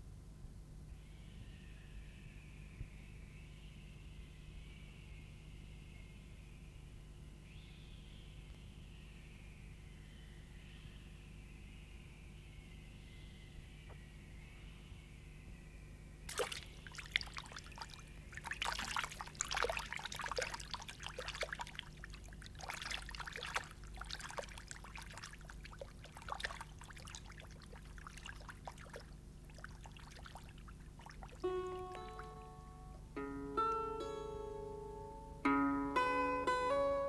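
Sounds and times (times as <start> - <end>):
water trickling and splashing: 16.3 - 33.0
water dripping: 16.3 - 33.1
plucked-string music: 31.4 - 37.0.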